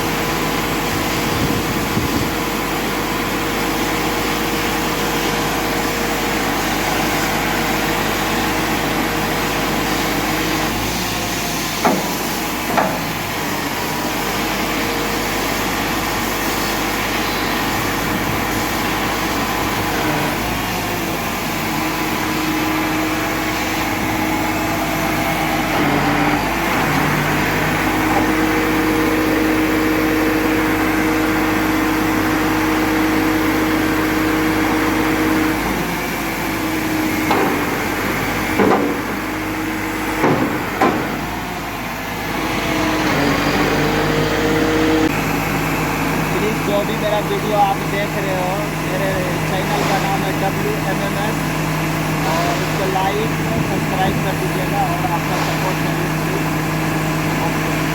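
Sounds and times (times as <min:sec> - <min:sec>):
truck engine running: 0:00.0 - 0:57.9
sharp knocks: 0:11.8 - 0:13.1, 0:38.6 - 0:39.1, 0:40.2 - 0:41.3.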